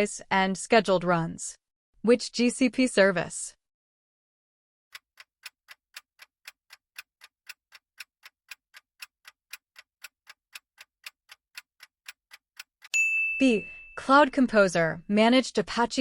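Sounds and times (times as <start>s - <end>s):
countdown clock ticking: 4.9s - 12.9s.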